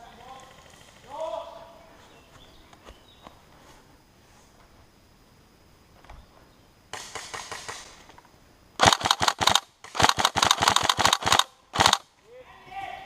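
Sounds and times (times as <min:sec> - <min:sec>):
airsoft guns firing: 0:06.9 - 0:08.2, 0:08.8 - 0:12.1.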